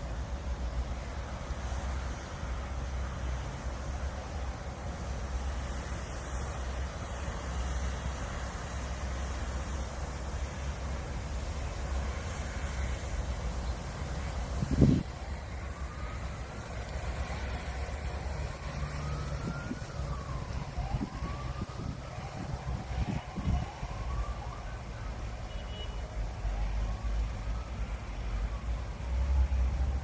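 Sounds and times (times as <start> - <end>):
siren wailing: 14.6 - 25.5, 26.1 - 30.0.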